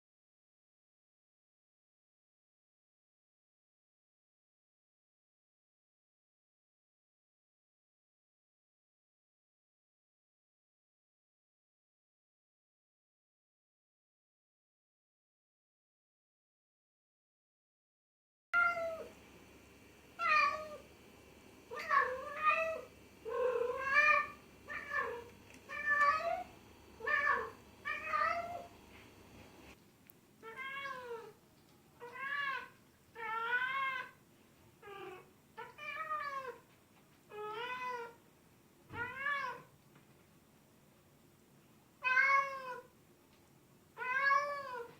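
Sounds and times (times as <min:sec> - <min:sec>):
cat meowing: 0:18.6 - 0:19.1, 0:20.2 - 0:20.8, 0:21.7 - 0:28.7, 0:30.4 - 0:31.4, 0:32.0 - 0:34.2, 0:34.8 - 0:36.6, 0:37.3 - 0:38.2, 0:38.9 - 0:39.7, 0:42.0 - 0:42.9, 0:44.0 - 0:44.9
background hiss: 0:18.6 - 0:37.4.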